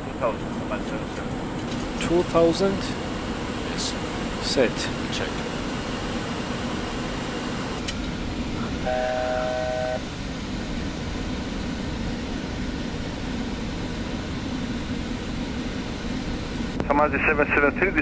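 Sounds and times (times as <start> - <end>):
cockpit airflow noise: 0.0 - 16.9
electronic cockpit tone: 8.5 - 10.1.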